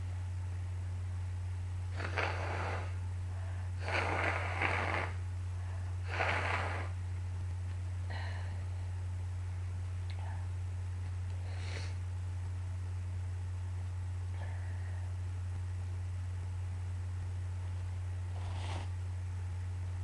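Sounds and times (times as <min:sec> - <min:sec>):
low electrical hum: 0:00.0 - 0:20.0
person blowing nose: 0:01.9 - 0:03.0, 0:03.8 - 0:05.2, 0:06.0 - 0:07.0, 0:18.4 - 0:19.0.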